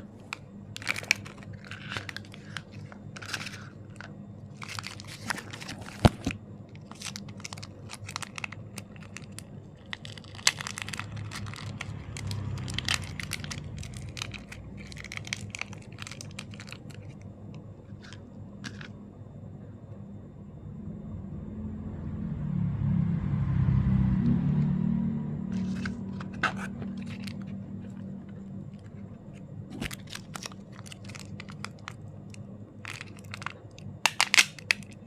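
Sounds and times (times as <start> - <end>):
plastic wrapper crinkling and tearing: 0.0 - 17.2, 25.6 - 29.0, 29.7 - 35.0
plastic clicks and snaps: 32.9 - 35.0.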